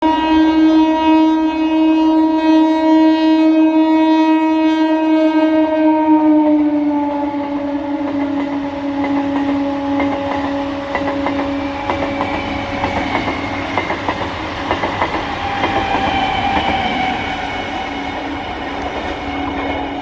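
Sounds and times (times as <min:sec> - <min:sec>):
train horn blast: 0:00.0 - 0:13.8
wheels clattering over rail joints: 0:08.4 - 0:17.2.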